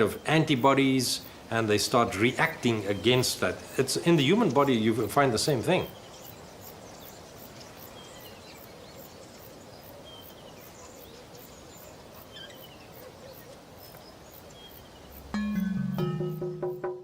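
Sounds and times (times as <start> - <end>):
steady background hiss: 0.0 - 17.0
faint bird chirps: 5.8 - 15.6.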